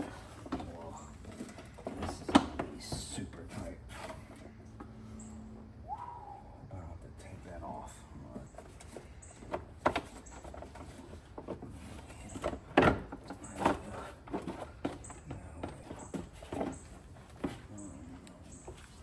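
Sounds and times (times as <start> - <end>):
car parts clicking and knocking: 0.0 - 3.5, 8.4 - 19.0.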